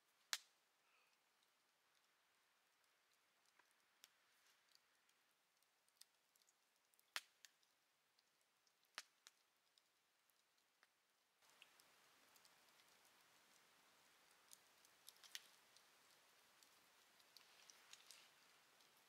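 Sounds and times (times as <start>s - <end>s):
campfire crackling: 0.0s - 19.0s
sharp fire pops: 11.4s - 19.0s.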